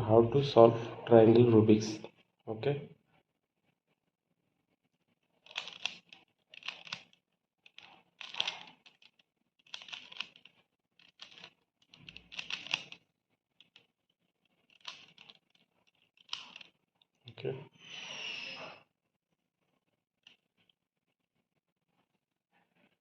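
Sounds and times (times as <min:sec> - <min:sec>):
plastic puzzle clicking and rattling: 0:05.3 - 0:16.8, 0:20.2 - 0:20.8.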